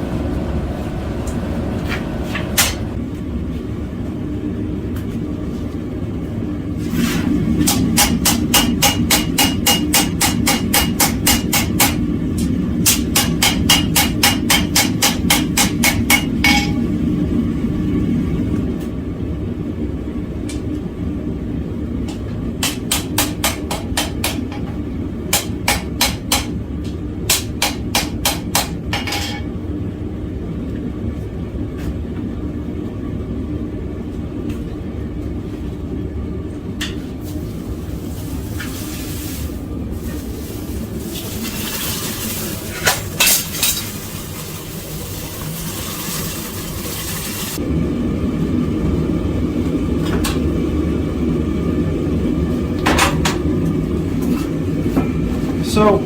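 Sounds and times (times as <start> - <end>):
hammer ringing on anvil: 15.6 - 16.8.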